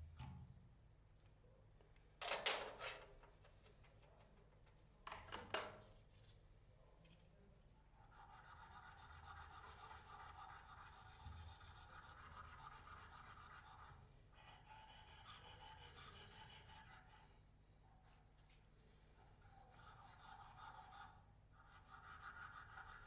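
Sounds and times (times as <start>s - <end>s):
hand tool rasping on metal pipe: 8.2s - 17.2s, 19.6s - 23.0s.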